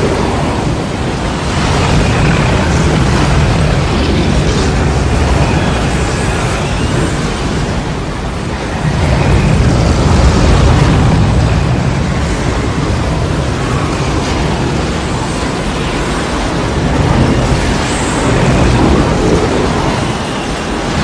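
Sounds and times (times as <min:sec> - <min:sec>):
loud wind with low rumble: 0:00.0 - 0:21.0.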